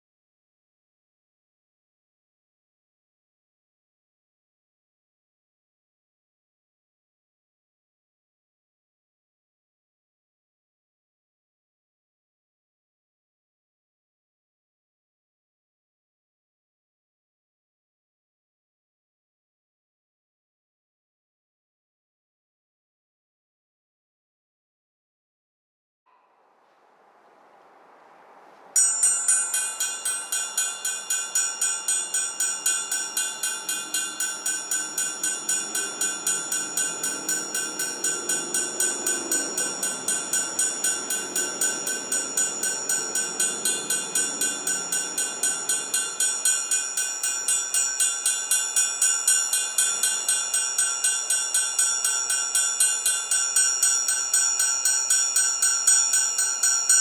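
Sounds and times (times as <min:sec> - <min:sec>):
triangle tremolo: 0:26.1 - 0:57.0.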